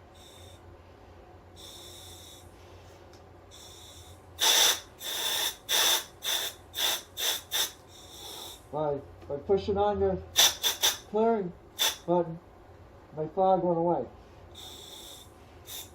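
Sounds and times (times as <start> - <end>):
loud bursts of air: 0.0 - 0.6, 1.6 - 2.9, 3.5 - 8.7, 10.3 - 11.1, 11.8 - 12.1, 14.5 - 15.9
breathing through regulator with whistle: 1.5 - 2.9, 3.5 - 8.7, 10.4 - 11.1, 11.8 - 12.1, 14.5 - 15.9.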